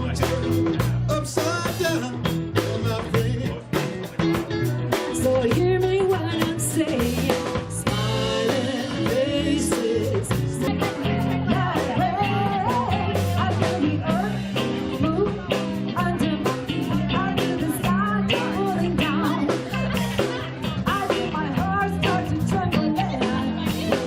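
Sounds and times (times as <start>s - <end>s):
live rock band playing: 0.0s - 24.0s.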